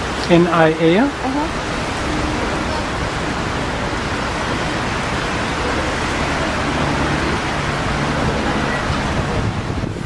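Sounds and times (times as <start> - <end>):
strong wind on microphone: 0.0 - 10.0.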